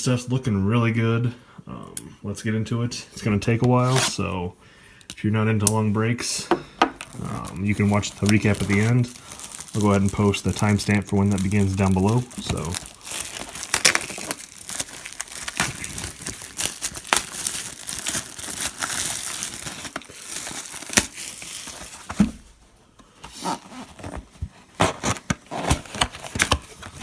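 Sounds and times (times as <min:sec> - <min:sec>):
plastic wrapping crinkling and tearing: 0:07.0 - 0:22.4, 0:23.3 - 0:27.0.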